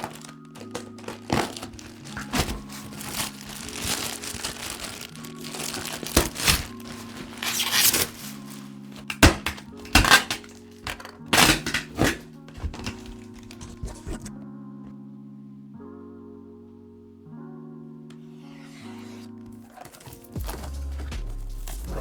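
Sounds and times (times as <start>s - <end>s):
packaging crinkling and rustling: 0.0s - 14.4s, 19.0s - 21.1s
background music: 0.0s - 22.0s.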